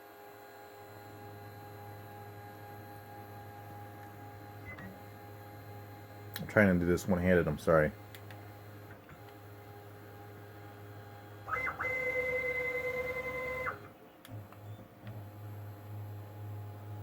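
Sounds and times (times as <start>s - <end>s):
stepper motor whine: 8.5s - 17.0s.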